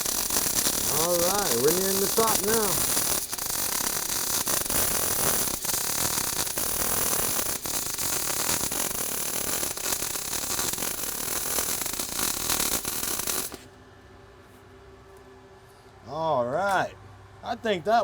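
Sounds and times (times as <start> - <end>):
welding arc crackling and popping: 0.0 - 13.7.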